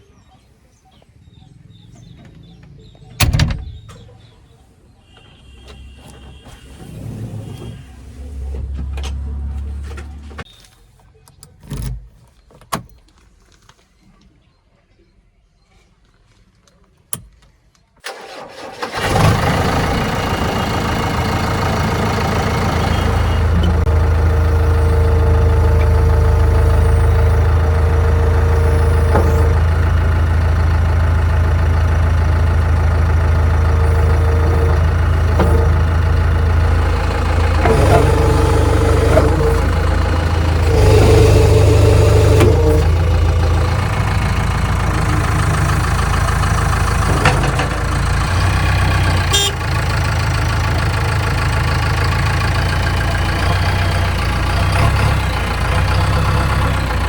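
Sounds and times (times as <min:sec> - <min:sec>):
diesel engine running: 0:05.8 - 0:10.5, 0:18.0 - 0:57.0.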